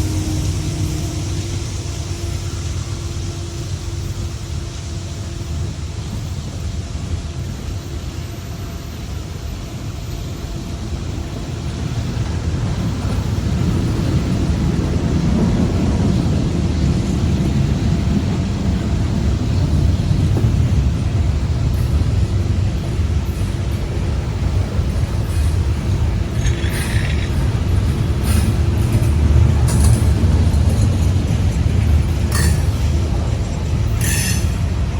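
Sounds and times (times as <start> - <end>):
freight train rumbling: 0.0 - 34.9
metallic screech: 26.3 - 27.7, 34.0 - 34.7.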